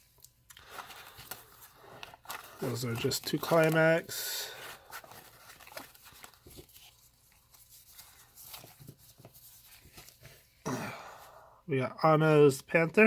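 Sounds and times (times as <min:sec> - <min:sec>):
cards clicking and rustling: 0:00.1 - 0:10.4.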